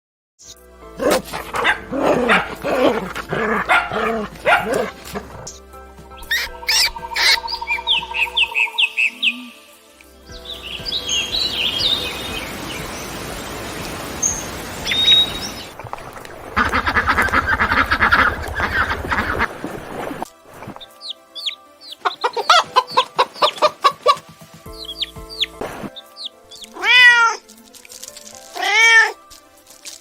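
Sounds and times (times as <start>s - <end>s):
small birds chirping: 1.0s - 15.8s, 20.8s - 28.9s
chickens clucking: 16.5s - 26.8s.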